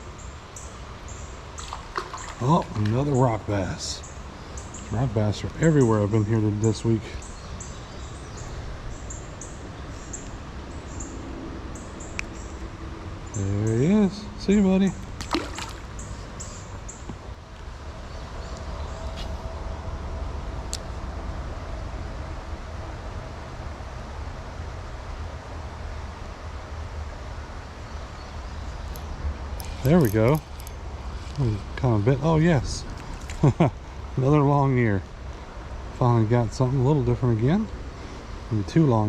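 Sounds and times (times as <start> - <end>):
flowing water rushing: 13.9 - 16.1.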